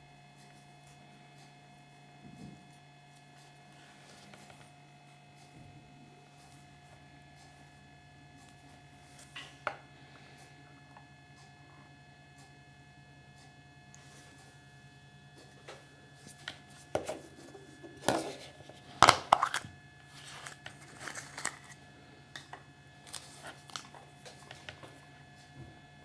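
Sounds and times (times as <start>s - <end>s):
wrapper crinkling and tearing: 18.3s - 25.0s.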